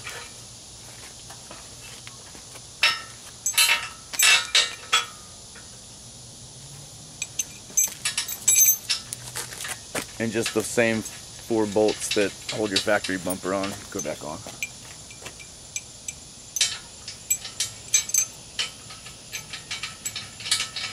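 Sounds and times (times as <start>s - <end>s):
metal clinking and knocking: 2.8s - 5.2s, 7.2s - 9.1s, 11.7s - 20.9s.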